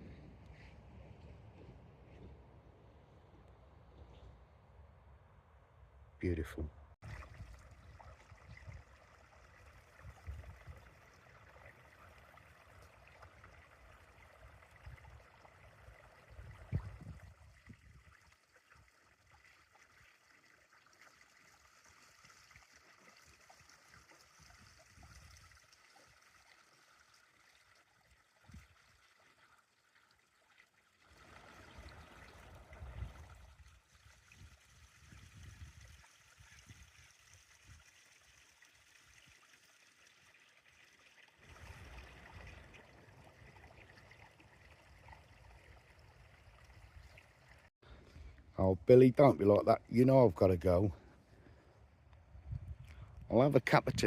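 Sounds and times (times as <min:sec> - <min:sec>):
faint trickling water: 0:07.0 - 0:54.0
wind rumble on microphone: 0:09.9 - 0:11.0, 0:16.2 - 0:18.2, 0:31.6 - 0:37.0, 0:52.2 - 0:54.0.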